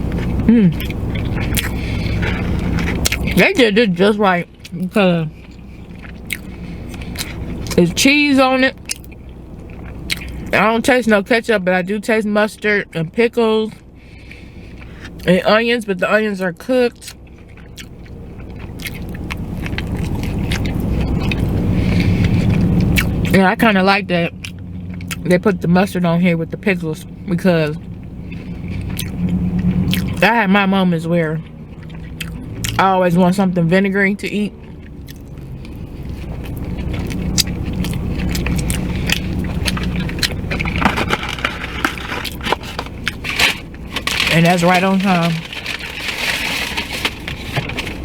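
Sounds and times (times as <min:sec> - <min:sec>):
crunchy chewing: 0:00.0 - 0:03.4, 0:04.6 - 0:07.8, 0:08.8 - 0:10.6, 0:17.0 - 0:23.4, 0:24.4 - 0:25.3, 0:27.8 - 0:30.2, 0:31.4 - 0:32.8, 0:34.6 - 0:48.0
vehicle low rumble: 0:00.0 - 0:48.0
food wrappers crinkling: 0:35.4 - 0:48.0.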